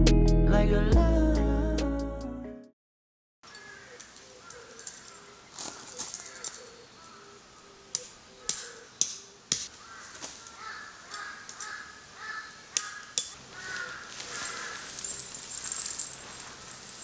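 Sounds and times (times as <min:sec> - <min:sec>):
birds calling harshly: 0:03.4 - 0:17.0.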